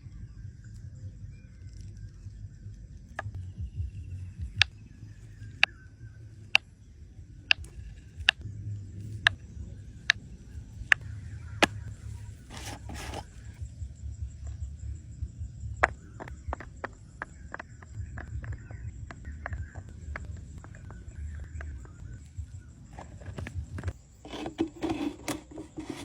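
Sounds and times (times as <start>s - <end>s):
low rumble: 0.0s - 12.5s.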